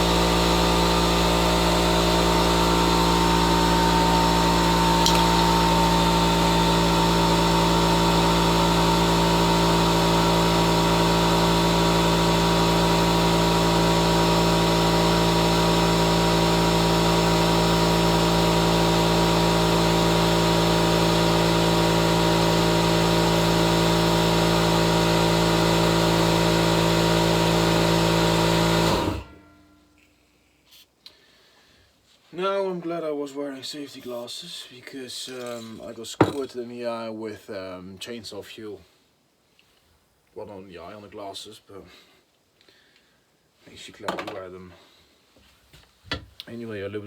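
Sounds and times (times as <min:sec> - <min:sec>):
air compressor running: 0:00.0 - 0:29.6.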